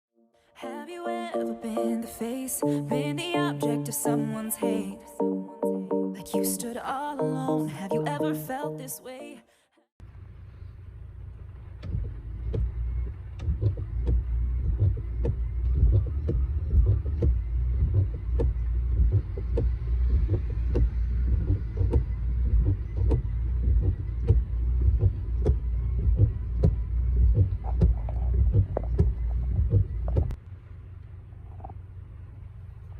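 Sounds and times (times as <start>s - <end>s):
car engine idling: 10.0s - 32.9s
wiper blades sweeping windscreen: 10.4s - 30.4s
wiper blade ticking and chatter: 11.2s - 30.4s.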